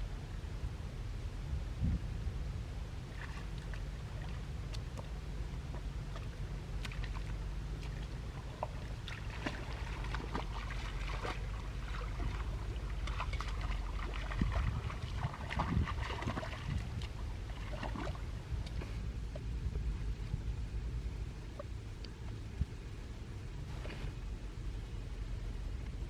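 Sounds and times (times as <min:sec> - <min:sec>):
wind rumble on microphone: 0:00.0 - 0:26.0
creek water splashing: 0:03.0 - 0:22.8.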